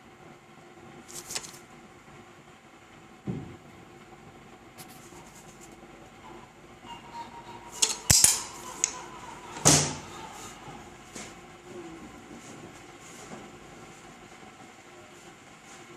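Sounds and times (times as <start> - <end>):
faint steady hum: 0.0 - 15.9.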